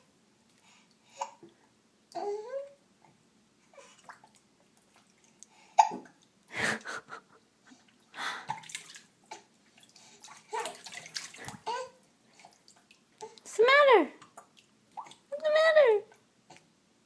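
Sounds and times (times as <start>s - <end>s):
bath water splashing: 4.0s - 6.8s, 8.0s - 13.2s, 14.1s - 15.3s.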